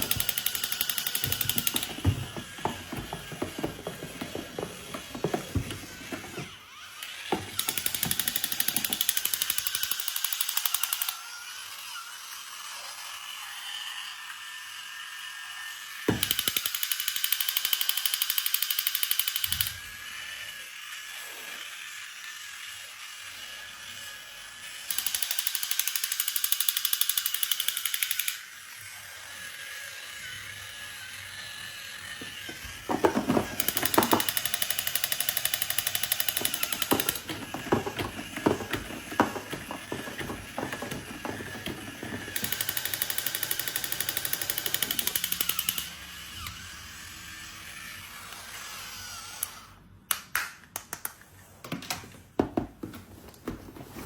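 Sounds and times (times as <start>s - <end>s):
clicks and knocks: 0.0s - 6.5s, 32.2s - 34.4s
small motor buzzing: 0.0s - 49.8s.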